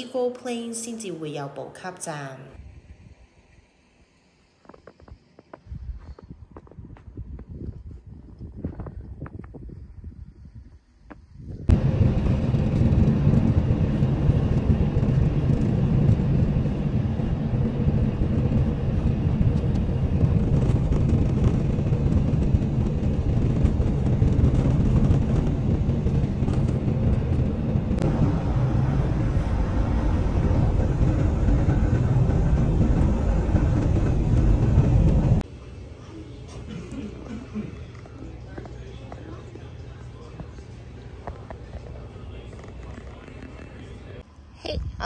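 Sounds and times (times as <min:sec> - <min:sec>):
vehicle engine and road noise: 0:11.7 - 0:35.4.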